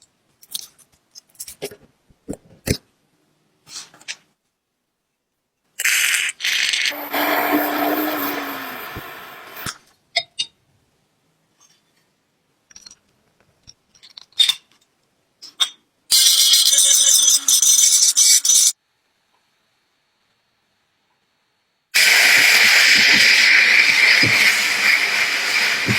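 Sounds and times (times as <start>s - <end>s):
handheld power tool running: 6.9s - 9.7s, 22.0s - 25.9s.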